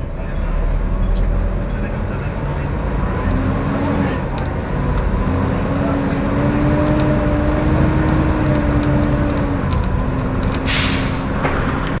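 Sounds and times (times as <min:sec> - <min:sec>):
bus engine whine: 0:00.0 - 0:12.0
compressed air hiss: 0:10.6 - 0:11.5.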